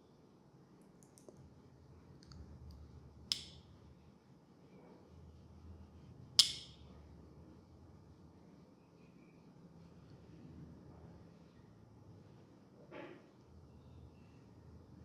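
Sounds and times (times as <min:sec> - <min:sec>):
faint small clicks: 0:00.8 - 0:01.4.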